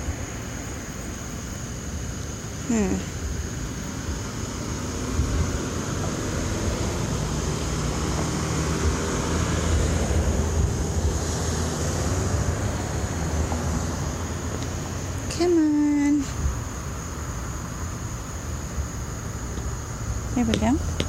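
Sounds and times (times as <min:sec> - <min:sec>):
car engines rumbling: 0:00.0 - 0:21.0.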